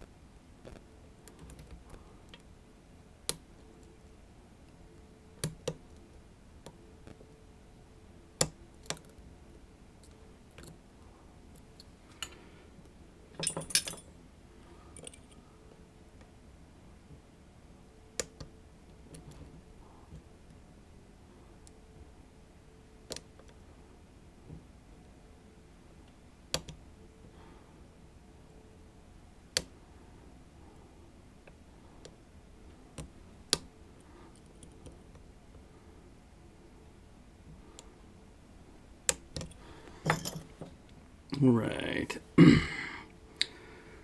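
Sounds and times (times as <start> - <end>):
lock picks clicking in a lock: 13.4 - 14.1.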